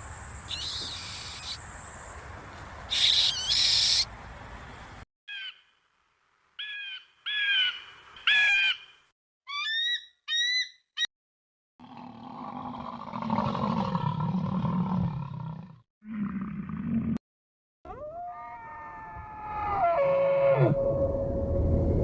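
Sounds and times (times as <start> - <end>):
background hiss: 0.0 - 5.0
bird calls: 0.0 - 5.6.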